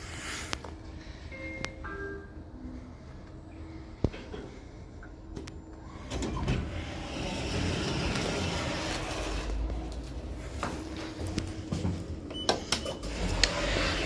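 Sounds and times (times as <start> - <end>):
lift doors sliding: 5.8 - 9.9, 11.8 - 14.0.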